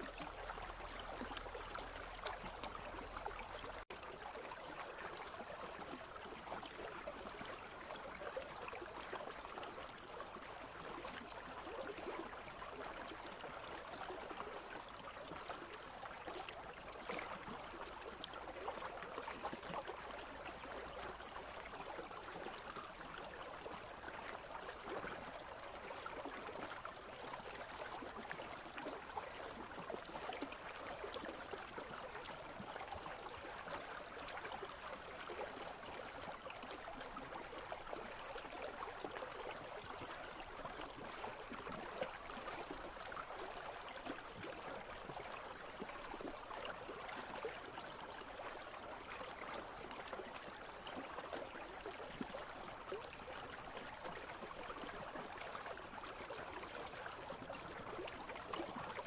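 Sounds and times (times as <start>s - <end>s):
stream flowing: 0.0s - 59.0s.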